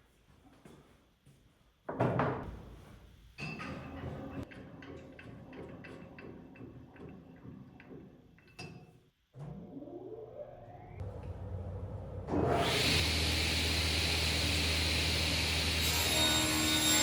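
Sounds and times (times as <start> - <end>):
electric saw motor whining: 12.3 - 17.0.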